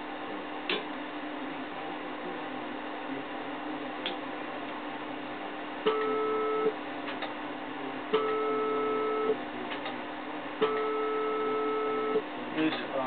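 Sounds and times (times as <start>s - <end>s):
amplifier hum: 0.0s - 13.0s
click: 7.1s - 7.4s.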